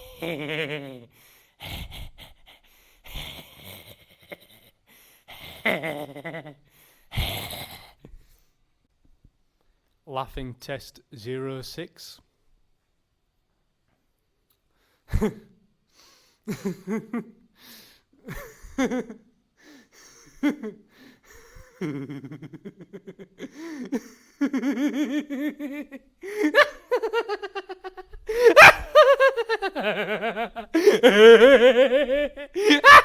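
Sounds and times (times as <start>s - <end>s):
person laughing: 0.0s - 1.1s, 5.5s - 6.6s, 15.1s - 15.5s, 16.5s - 17.4s, 18.2s - 19.2s, 20.0s - 33.0s.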